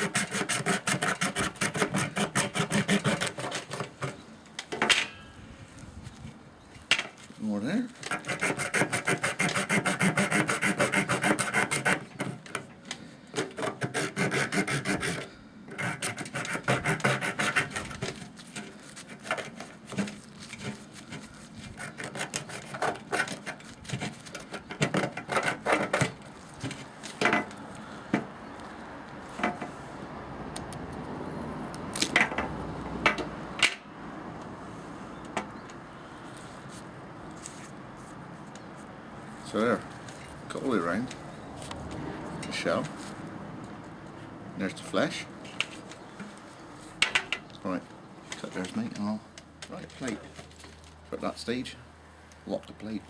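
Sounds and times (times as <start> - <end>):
hand saw rasping through shell: 0.0 - 4.2, 8.0 - 12.7, 13.3 - 26.8.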